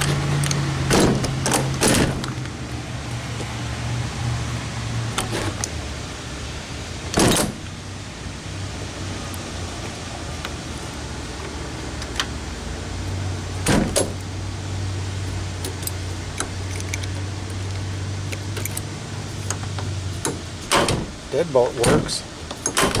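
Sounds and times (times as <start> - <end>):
metallic door latch clicks: 0.0 - 2.6, 5.1 - 5.8, 7.1 - 7.8, 13.6 - 14.3, 15.6 - 23.0.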